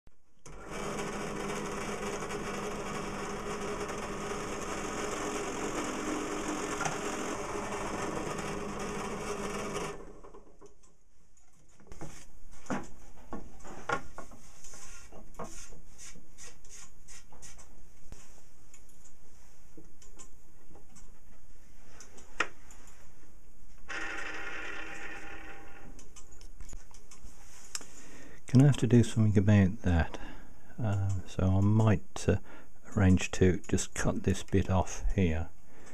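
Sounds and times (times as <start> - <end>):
small motor-driven tool running: 0.5 - 10.4.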